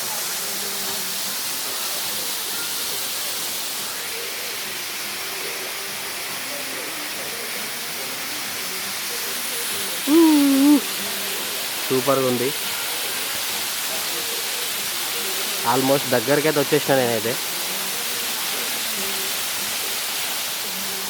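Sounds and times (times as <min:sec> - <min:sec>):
waterfall rushing: 0:09.3 - 0:11.1, 0:11.7 - 0:19.3.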